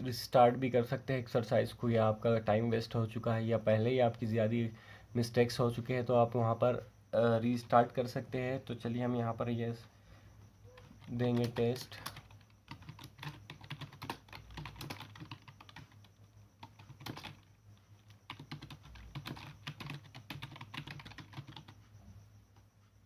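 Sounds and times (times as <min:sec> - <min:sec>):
fast typing on keyboard: 0:10.7 - 0:21.8.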